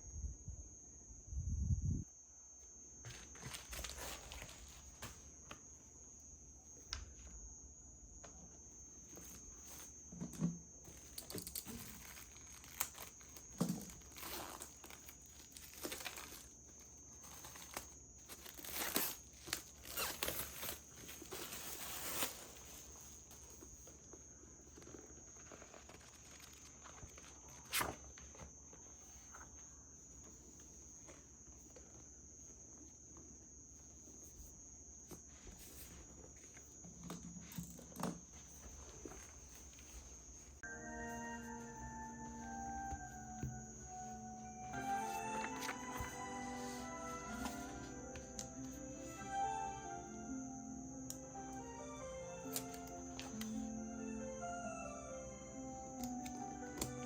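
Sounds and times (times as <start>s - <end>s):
paper rustling and crinkling: 3.0s - 5.4s, 10.8s - 24.0s, 24.7s - 29.6s, 44.7s - 49.2s.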